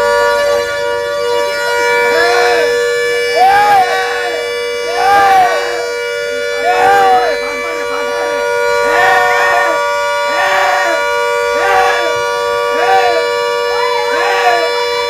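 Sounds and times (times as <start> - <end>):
person shouting: 3.4 - 5.9, 6.6 - 12.2, 12.8 - 14.9.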